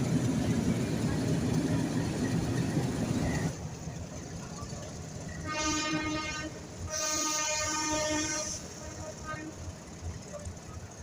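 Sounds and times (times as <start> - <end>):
train running noise: 0.0 - 11.0
train horn: 5.4 - 9.7.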